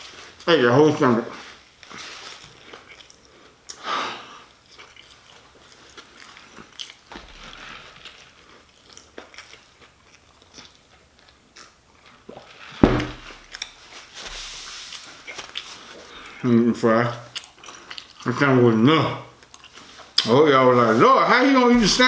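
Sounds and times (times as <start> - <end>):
person chewing crunchy food: 8.0 - 11.7, 17.3 - 18.2
loud thump: 12.8 - 13.5.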